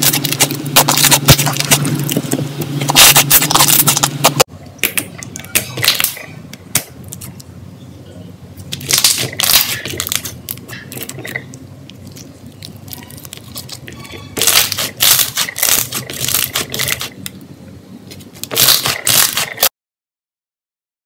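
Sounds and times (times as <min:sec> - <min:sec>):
slime crackling and popping: 0:08.7 - 0:17.2.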